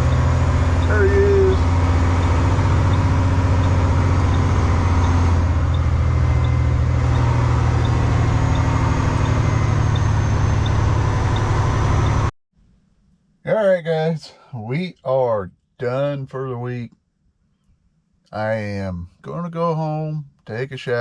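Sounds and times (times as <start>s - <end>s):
diesel truck engine running: 0.0s - 12.3s.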